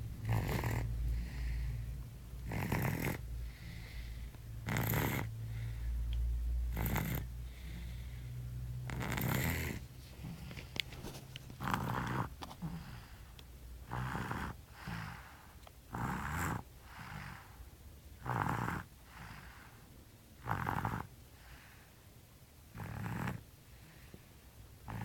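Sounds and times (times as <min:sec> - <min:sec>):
soft breathing: 0:00.0 - 0:13.5, 0:14.6 - 0:15.6, 0:16.7 - 0:17.8, 0:18.8 - 0:20.0, 0:21.2 - 0:22.2, 0:23.6 - 0:25.0
loud snoring: 0:00.2 - 0:01.6, 0:02.4 - 0:03.8, 0:04.6 - 0:05.6, 0:06.6 - 0:08.0, 0:08.8 - 0:10.4, 0:11.6 - 0:13.1, 0:13.8 - 0:17.6, 0:18.2 - 0:19.8, 0:20.4 - 0:21.5, 0:22.7 - 0:23.4.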